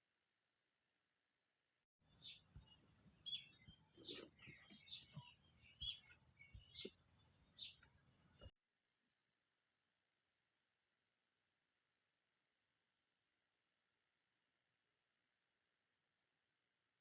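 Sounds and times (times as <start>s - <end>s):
birds chirping: 2.0s - 8.5s.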